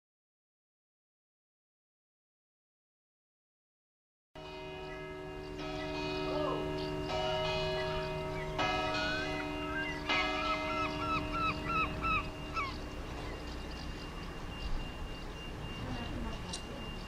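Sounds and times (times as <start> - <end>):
church bell tolling: 4.4 - 17.0
gull calling: 7.8 - 13.4.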